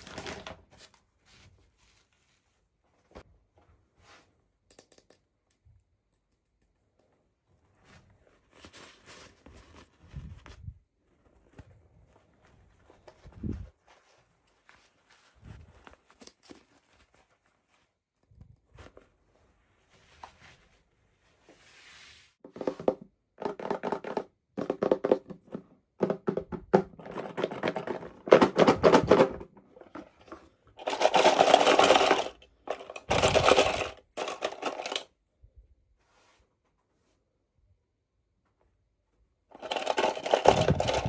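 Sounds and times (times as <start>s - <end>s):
plastic and cardboard crinkling: 0.0s - 2.4s, 26.8s - 35.1s, 39.6s - 41.0s.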